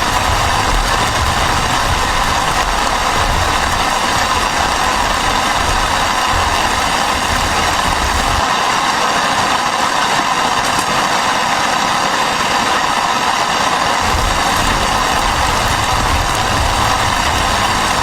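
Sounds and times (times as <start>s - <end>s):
low rumble: 0.0s - 8.4s, 14.0s - 18.0s
heavy rain and wind hiss: 0.0s - 18.0s.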